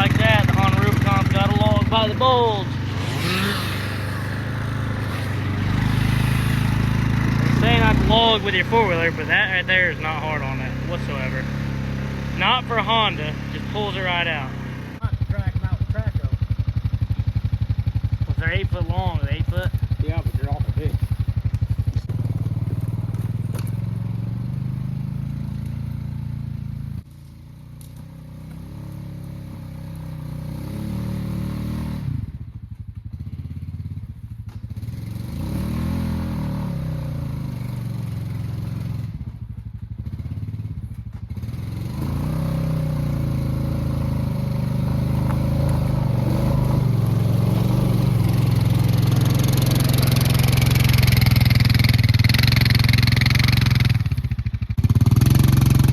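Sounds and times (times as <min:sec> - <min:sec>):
atv engine straining under load: 0:00.0 - 0:15.1, 0:41.3 - 0:55.9.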